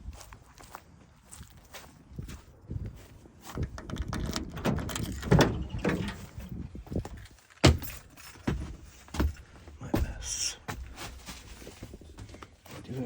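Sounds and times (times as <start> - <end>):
boxes and parts clattering: 4.0 - 6.6.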